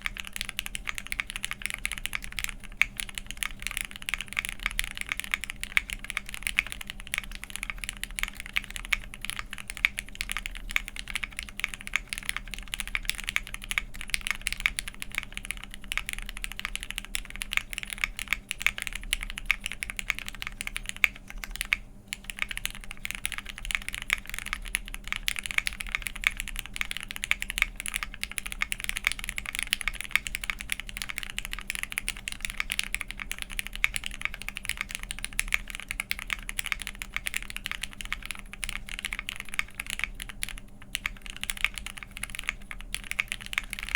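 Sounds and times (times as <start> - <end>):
fast typing on mechanical keyboard: 0.0 - 43.9.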